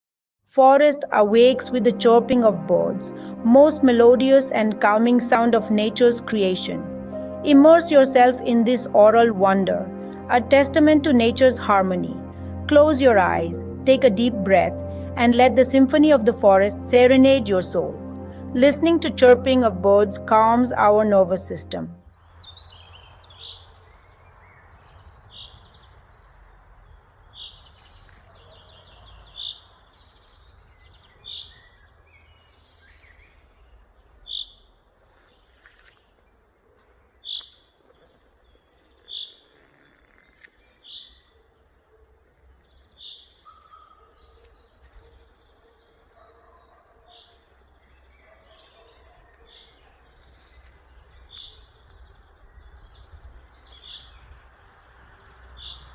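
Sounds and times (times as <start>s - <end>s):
bird chirping: 21.6s - 35.0s, 42.6s - 55.9s.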